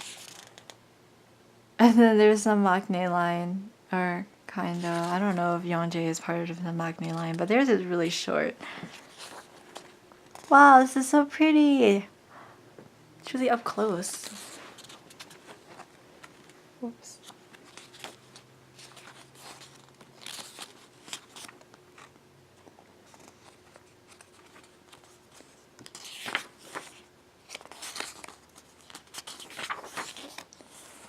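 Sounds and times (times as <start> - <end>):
paper pages rustling: 0.0 - 0.8, 4.7 - 5.4, 6.9 - 7.5, 8.9 - 10.6, 13.6 - 31.0.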